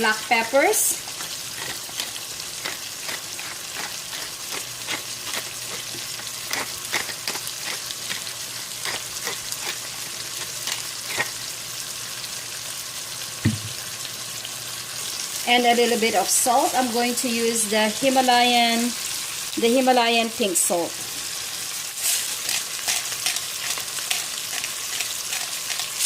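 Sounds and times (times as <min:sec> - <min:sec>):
food sizzling in a pan: 0:00.0 - 0:26.0
low thump: 0:13.4 - 0:13.8.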